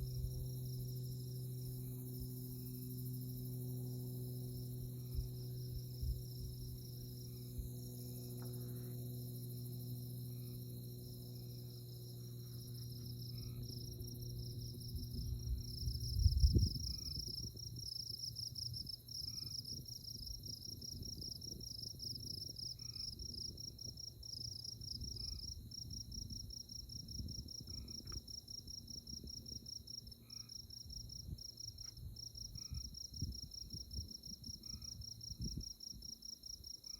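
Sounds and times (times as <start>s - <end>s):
low hum: 0.0s - 28.3s
constant high whine: 0.0s - 36.9s
cricket chirps: 0.0s - 36.9s
insects pulsing trill: 0.0s - 36.9s.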